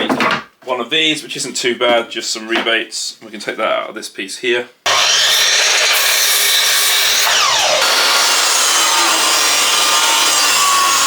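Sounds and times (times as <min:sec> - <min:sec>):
power saw cutting wood: 0:04.9 - 0:11.0.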